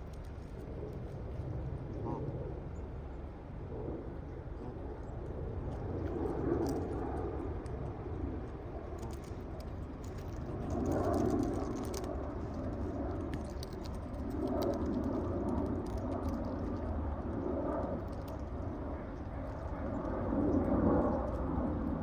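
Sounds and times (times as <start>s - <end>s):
birds pecking clicks: 0.0s - 1.6s, 5.7s - 22.0s
low rumble: 0.0s - 22.0s
rustling: 8.4s - 16.8s.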